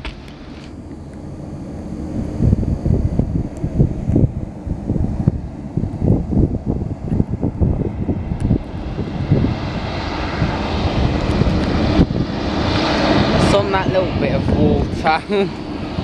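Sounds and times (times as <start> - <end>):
hovercraft engine and propeller: 0.0 - 16.0
wind buffeting microphone: 0.0 - 16.0.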